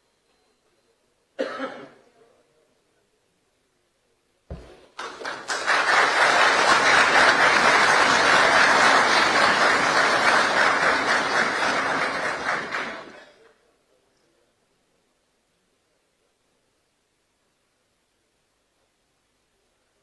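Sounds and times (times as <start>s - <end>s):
crowd applauding: 4.9s - 13.3s.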